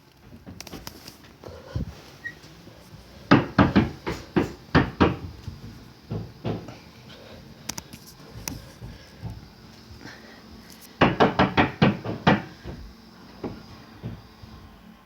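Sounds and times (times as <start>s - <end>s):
banging knocks: 3.3s - 6.8s, 11.0s - 14.2s.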